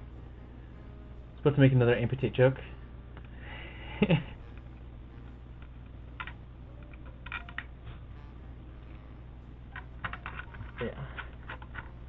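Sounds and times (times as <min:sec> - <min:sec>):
steady low hum: 0:00.0 - 0:12.0
keyboard clicks: 0:06.2 - 0:07.8.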